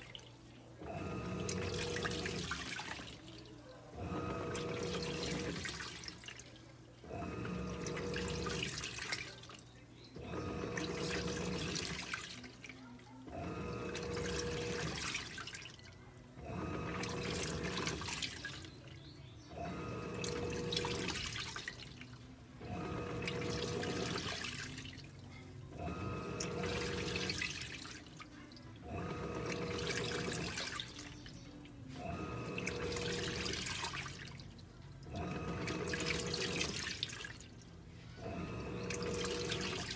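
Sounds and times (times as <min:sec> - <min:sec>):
washing machine motor hum: 0:00.0 - 0:39.9
water sloshing: 0:00.0 - 0:39.9.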